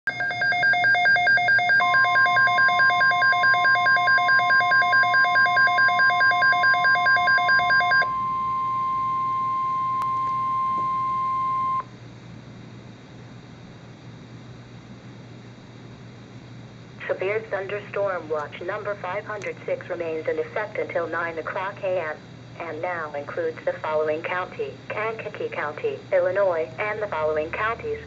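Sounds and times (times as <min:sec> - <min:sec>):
steady high alarm tone: 0:00.1 - 0:11.9.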